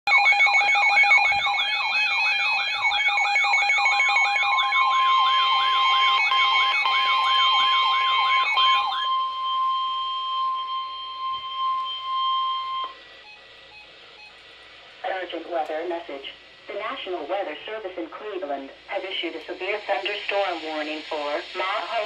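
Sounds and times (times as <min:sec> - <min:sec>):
falling whoop alarm: 0:00.1 - 0:13.0
steady beeping tones: 0:00.1 - 0:14.4
steady long alarm tone: 0:00.1 - 0:14.4, 0:19.6 - 0:22.0.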